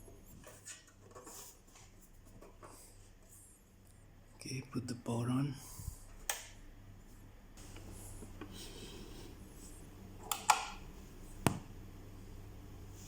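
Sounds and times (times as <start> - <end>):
low steady hum: 0.0 - 13.0
power switch clicks: 10.3 - 10.8.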